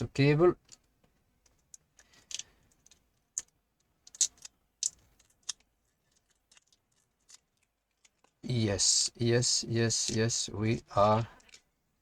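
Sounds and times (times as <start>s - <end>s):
plastic and metal parts clicking: 0.6s - 8.4s, 11.1s - 11.7s.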